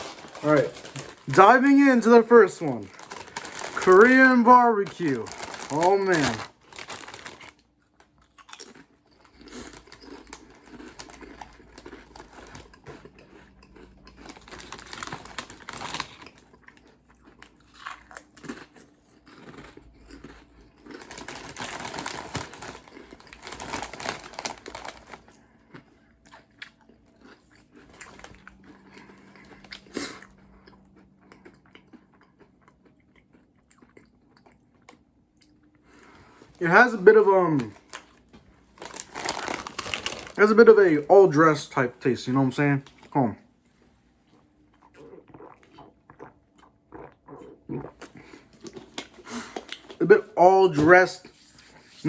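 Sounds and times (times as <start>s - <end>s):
person crunching potato chips: 0.0s - 41.0s.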